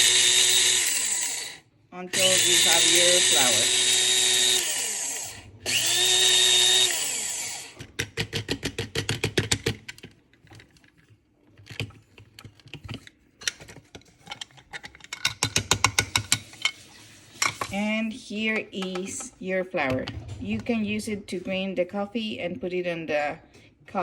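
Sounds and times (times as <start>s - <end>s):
coffee grinder motor whirring: 0.0s - 7.8s.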